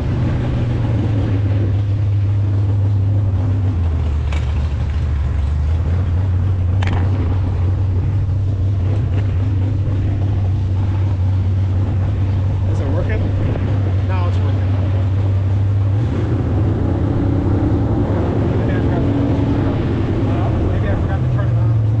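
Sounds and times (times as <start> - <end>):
engine idling: 0.0 - 22.0.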